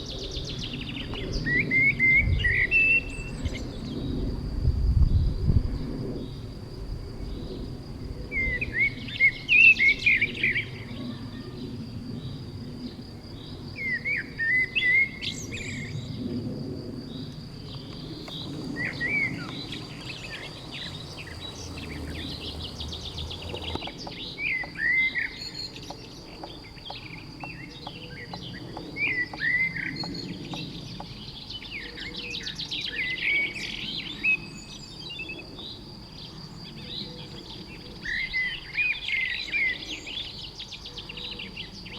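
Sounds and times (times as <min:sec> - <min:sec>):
songbirds chirping and singing: 0:17.1 - 0:41.9.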